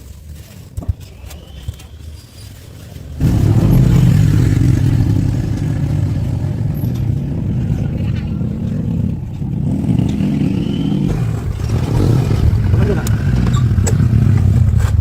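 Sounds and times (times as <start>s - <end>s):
vehicle engine droning: 3.2s - 15.0s.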